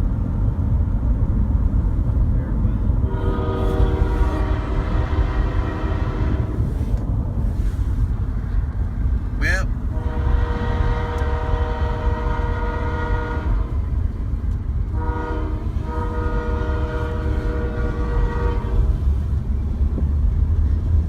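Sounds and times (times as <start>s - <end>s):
low rumble: 0.0s - 21.0s
locomotive air horn blasts: 3.0s - 7.0s, 9.5s - 14.1s, 14.9s - 19.4s.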